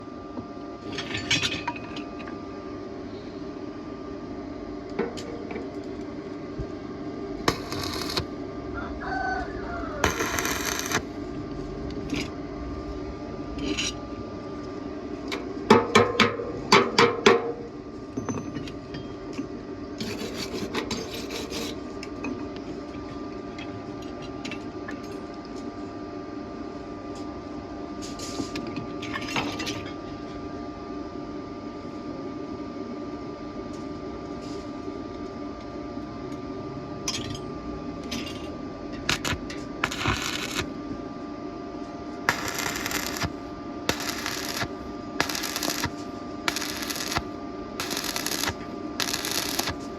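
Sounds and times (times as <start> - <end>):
steady electrical hum: 0.0 - 18.2, 18.8 - 29.0, 29.9 - 49.9
scraping on steel tubing: 20.0 - 21.8.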